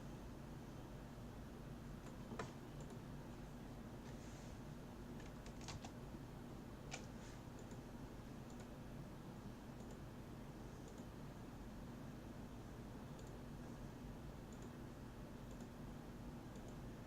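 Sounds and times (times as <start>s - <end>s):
low room hum: 0.0s - 17.0s
computer clicks: 2.0s - 3.0s, 6.9s - 7.8s, 8.5s - 8.7s, 9.8s - 10.0s, 10.8s - 11.1s, 13.2s - 13.4s, 14.5s - 14.8s, 15.4s - 15.8s, 16.5s - 16.8s.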